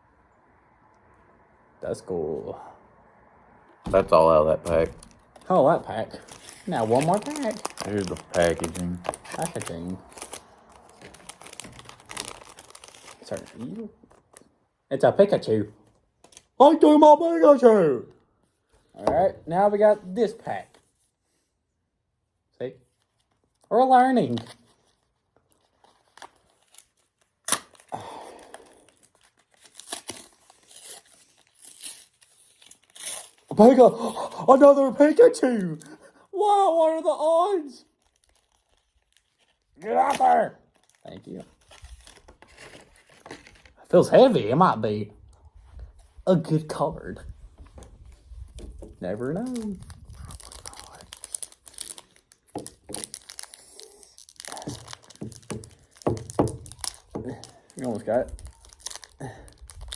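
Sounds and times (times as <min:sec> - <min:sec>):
foil wrapper crinkling: 0:04.7 - 0:14.5, 0:22.9 - 0:34.5, 0:37.8 - 0:43.8, 0:47.7 - 0:59.9
foil wrapper tearing: 0:04.8 - 0:13.9, 0:24.2 - 0:34.4, 0:37.8 - 0:43.8, 0:48.0 - 0:59.9.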